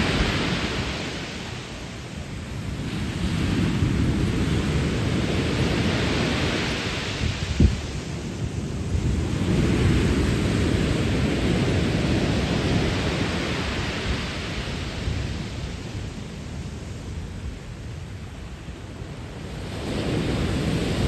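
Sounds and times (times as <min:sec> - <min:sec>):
waves breaking on pebble beach: 0:00.0 - 0:16.2.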